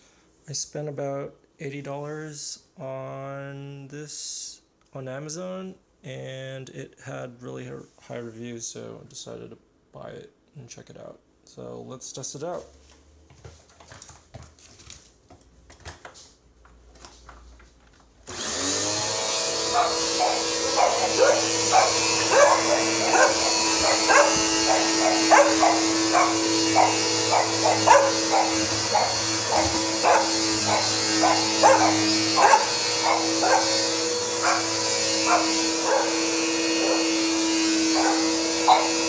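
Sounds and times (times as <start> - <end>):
upright vacuum cleaner running: 18.3 - 39.0.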